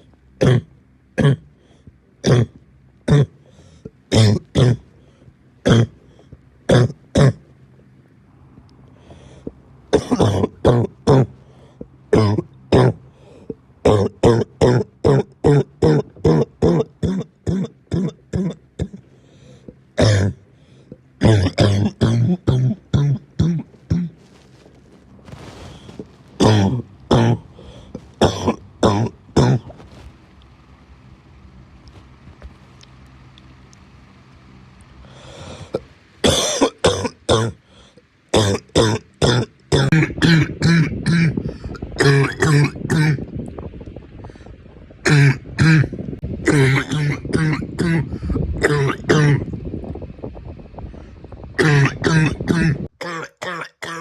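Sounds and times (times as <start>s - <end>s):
man coughing hoarsely: 2.2s - 3.4s, 4.1s - 4.9s, 10.0s - 11.4s, 12.2s - 13.0s, 13.9s - 19.0s, 20.0s - 20.4s, 21.2s - 24.2s, 25.8s - 29.7s, 35.6s - 37.6s, 38.4s - 43.2s, 45.1s - 49.5s, 51.6s - 54.0s
breath in: 3.4s - 3.9s, 9.0s - 9.6s, 19.1s - 19.8s, 27.5s - 28.2s, 35.0s - 35.8s.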